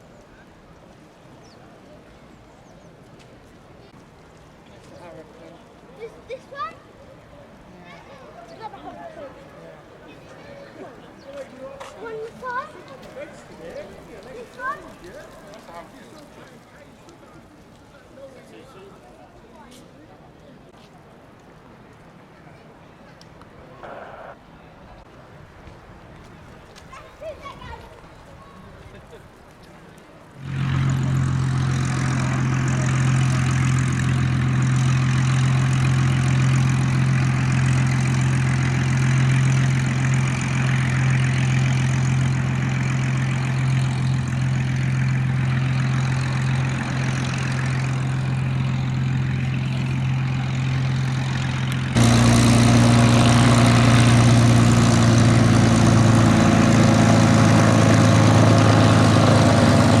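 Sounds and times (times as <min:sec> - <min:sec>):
propeller aircraft engine running: 0:30.4 - 1:00.0.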